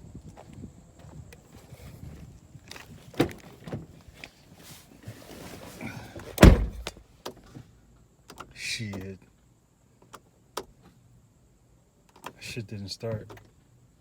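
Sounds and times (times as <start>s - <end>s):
car door shutting: 5.9s - 7.0s
car door latch click: 6.4s - 7.0s.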